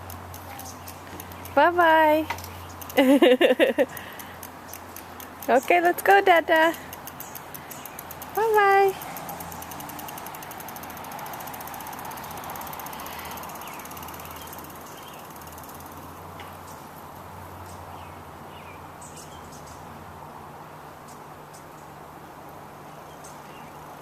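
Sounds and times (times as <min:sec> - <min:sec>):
bicycle freewheel ticking: 0:00.0 - 0:16.8
faint chirps and clicks: 0:00.0 - 0:16.9
outdoor background noise: 0:00.0 - 0:24.0.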